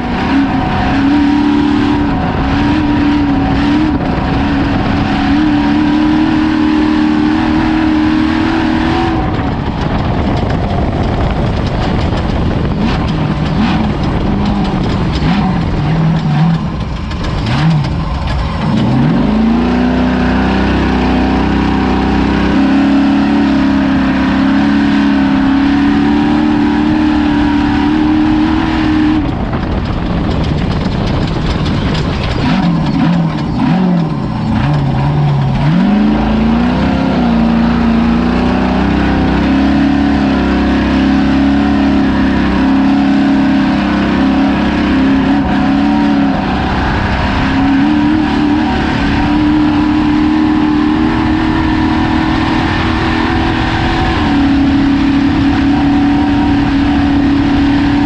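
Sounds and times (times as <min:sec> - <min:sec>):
truck engine revving hard: 0:00.0 - 0:58.0
knocks and rattles: 0:09.2 - 0:20.2, 0:25.1 - 0:51.8.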